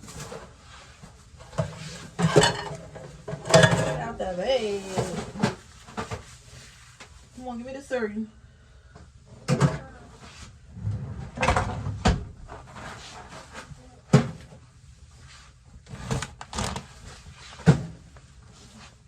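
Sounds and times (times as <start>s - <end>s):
cupboard doors opening and shutting: 10.8s - 13.0s, 15.9s - 18.0s.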